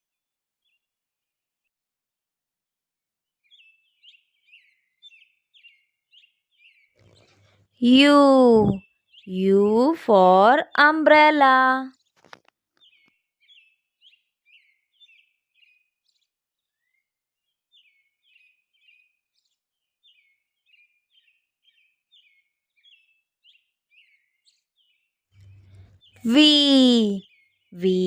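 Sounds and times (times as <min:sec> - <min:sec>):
faint bird chirping: 0:20.0 - 0:28.0.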